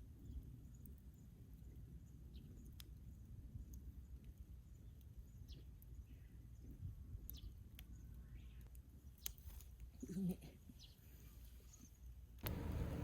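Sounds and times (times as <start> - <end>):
faint clicks: 12.4 - 13.0.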